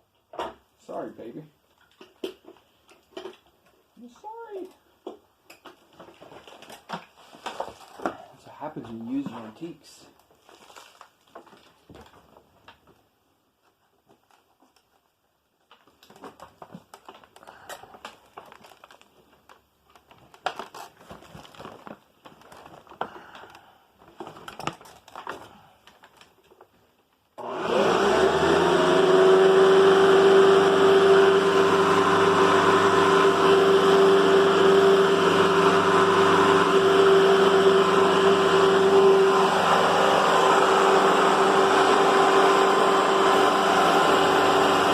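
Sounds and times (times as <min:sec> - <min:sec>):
vacuum cleaner motor running: 0:27.4 - 0:44.9.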